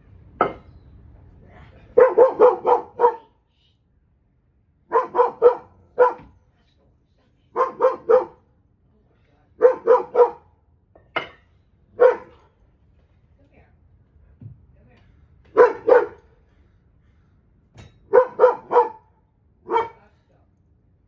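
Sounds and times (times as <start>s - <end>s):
dog barking: 1.9s - 3.4s, 4.9s - 6.4s, 7.5s - 8.4s, 9.6s - 10.5s, 12.0s - 12.5s, 15.5s - 16.3s, 18.1s - 19.1s, 19.7s - 20.1s.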